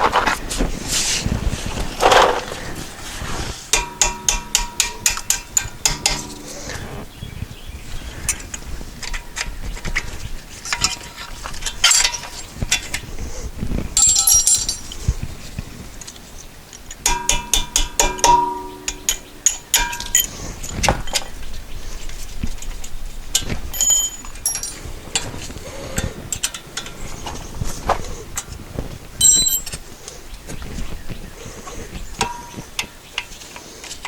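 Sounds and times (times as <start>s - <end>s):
metal on metal strikes: 3.7s - 6.9s, 17.0s - 20.3s.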